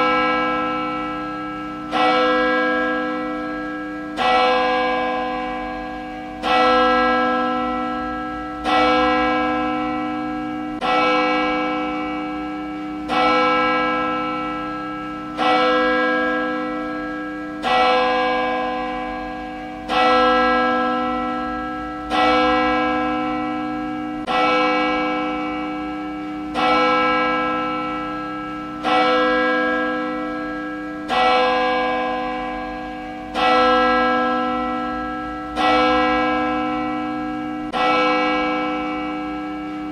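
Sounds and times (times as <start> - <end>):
church bell tolling: 0.0 - 39.9.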